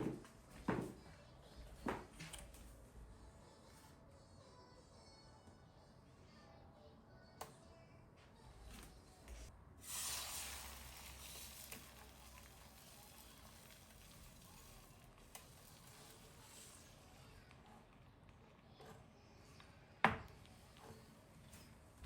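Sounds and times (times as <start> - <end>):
food sizzling in hot oil: 9.8 - 16.8.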